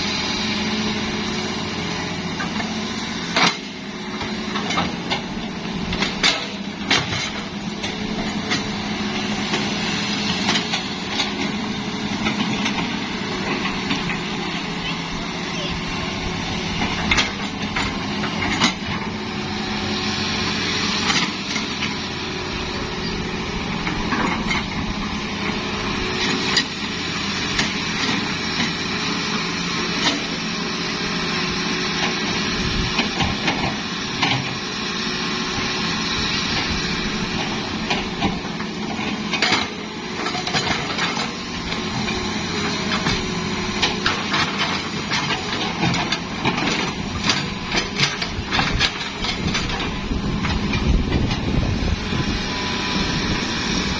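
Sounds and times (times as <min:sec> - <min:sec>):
excavator diesel engine running: 0:00.0 - 0:53.9.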